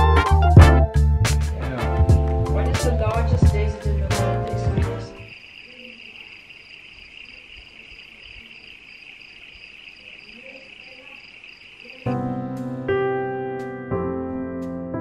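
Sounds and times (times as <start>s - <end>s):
insects chirring: 3.0s - 12.7s.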